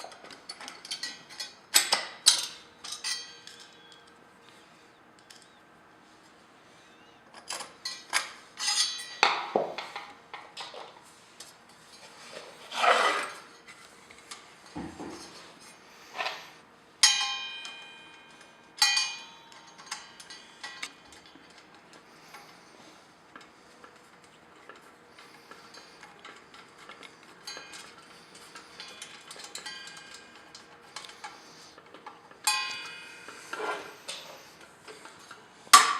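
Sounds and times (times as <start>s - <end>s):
clicks and knocks of fan parts: 0.0s - 4.6s, 5.2s - 5.6s, 7.3s - 12.1s, 17.0s - 35.9s
scraping: 12.2s - 13.5s
ringing metallic clinks: 17.0s - 21.3s, 28.7s - 30.5s, 32.4s - 33.4s.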